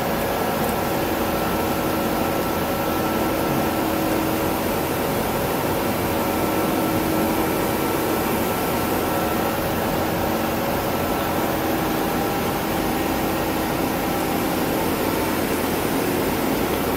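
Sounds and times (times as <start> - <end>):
lathe machine humming and whining: 0.0 - 16.9.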